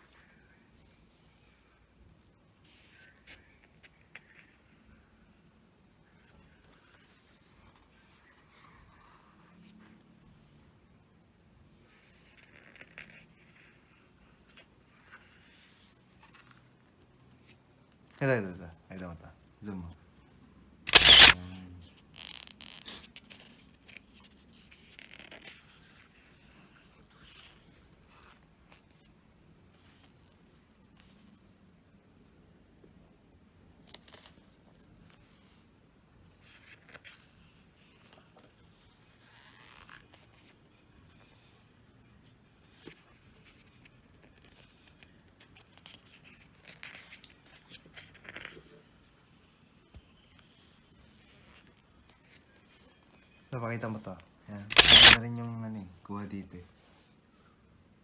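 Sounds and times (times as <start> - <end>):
brief scrapes and rustles: 20.9 - 21.4, 54.6 - 55.2
small clicks: 20.9 - 21.4, 54.7 - 55.2
rustling and scratching: 36.4 - 41.6, 42.6 - 55.6.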